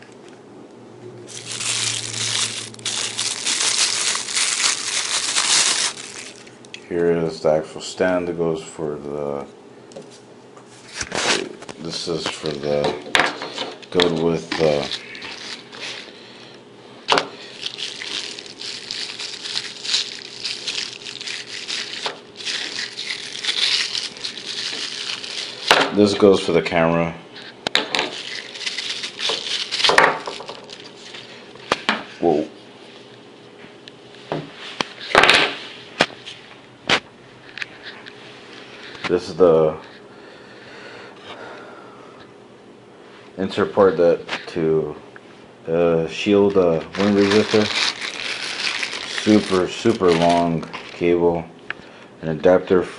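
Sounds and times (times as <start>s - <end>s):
packaging crinkling: 1.3s - 6.6s, 14.0s - 16.2s, 17.3s - 26.4s, 28.0s - 31.4s, 46.8s - 51.2s.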